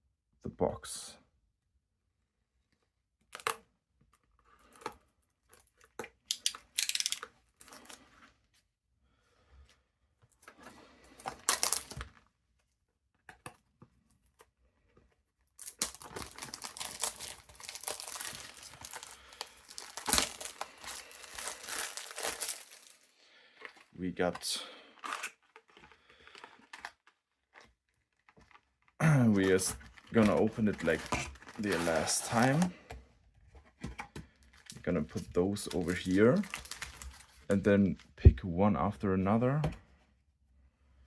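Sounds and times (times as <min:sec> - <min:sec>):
plastic shrink-wrap tearing and crinkling: 0:11.2 - 0:12.2, 0:15.6 - 0:23.1, 0:25.0 - 0:32.7, 0:35.7 - 0:37.5.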